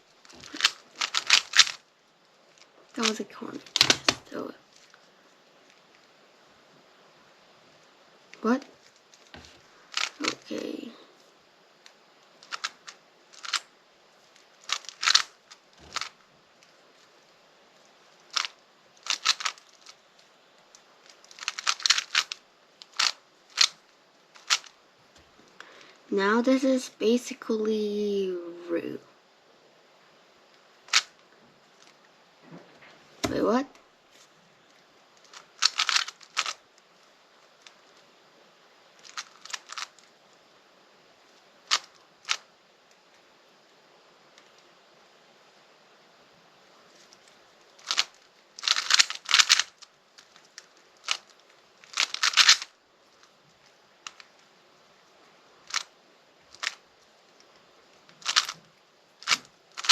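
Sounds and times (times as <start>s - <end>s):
puzzle cube plastic clicks: 0.2s - 1.8s, 2.5s - 5.0s, 8.6s - 10.9s, 11.8s - 13.7s, 14.4s - 16.2s, 17.8s - 20.0s, 20.7s - 24.8s, 30.9s - 31.2s, 35.2s - 36.6s, 39.0s - 40.1s, 41.6s - 42.4s, 47.8s - 53.3s, 54.0s - 54.4s, 55.6s - 55.9s, 56.5s - 56.9s, 58.2s - 59.9s.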